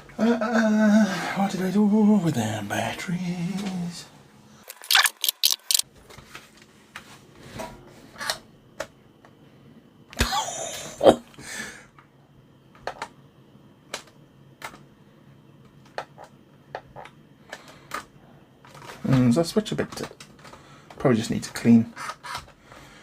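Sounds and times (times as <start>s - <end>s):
small hard objects clicking: 4.7s - 5.8s.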